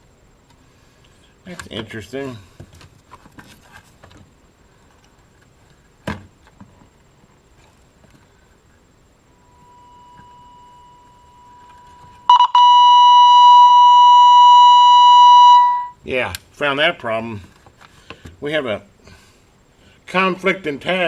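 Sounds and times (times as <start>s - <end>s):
test tone through radio speaker: 9.4s - 16.0s.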